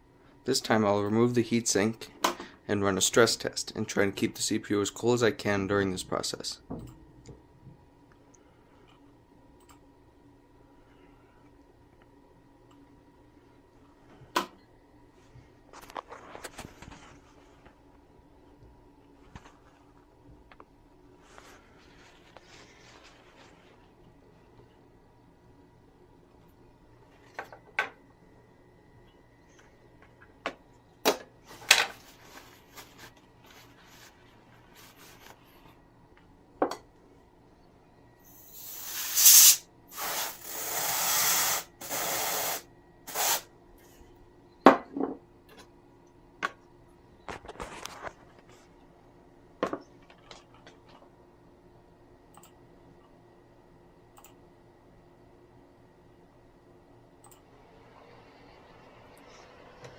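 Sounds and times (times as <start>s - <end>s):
aerosol can spraying: 38.4s - 43.4s.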